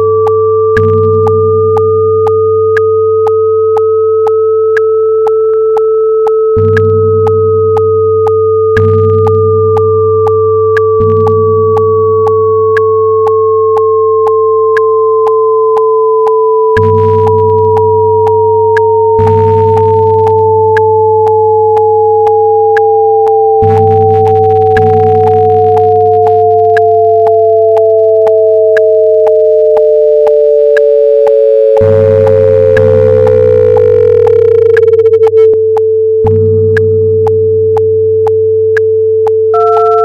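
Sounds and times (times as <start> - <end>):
synthetic sine-wave tones: 0.0 - 40.0
regular clicks: 5.2 - 14.4, 15.2 - 17.9, 23.2 - 40.0
low hum: 8.9 - 40.0.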